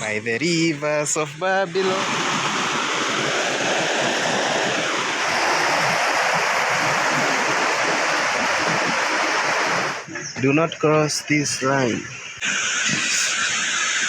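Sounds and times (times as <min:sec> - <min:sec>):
river and waterfall rushing: 0:00.4 - 0:10.1.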